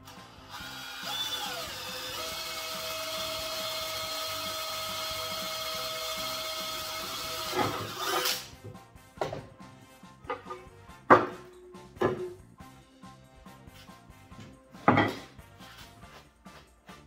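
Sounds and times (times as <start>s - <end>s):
electric drill whining: 0.0s - 8.5s.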